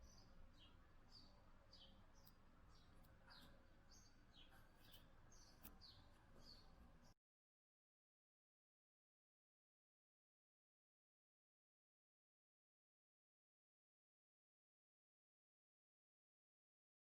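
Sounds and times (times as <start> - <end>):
faint bird chirping: 0.0 - 7.2.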